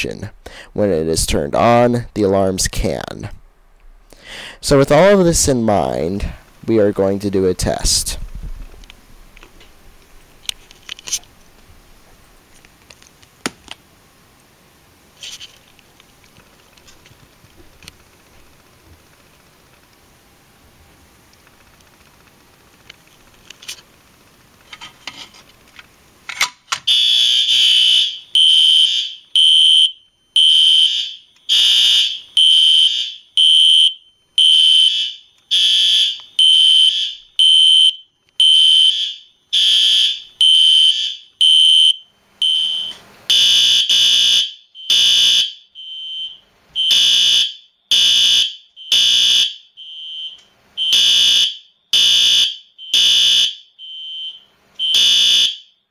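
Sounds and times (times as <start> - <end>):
fire alarm horn blasts: 26.9 - 55.9.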